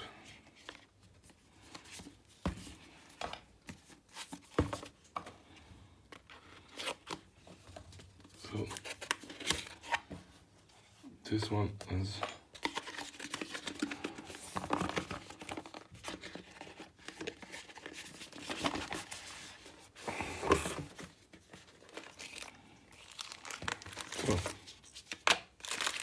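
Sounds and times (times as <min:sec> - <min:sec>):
packaging crinkling and tearing: 0:12.6 - 0:19.3, 0:21.7 - 0:26.0.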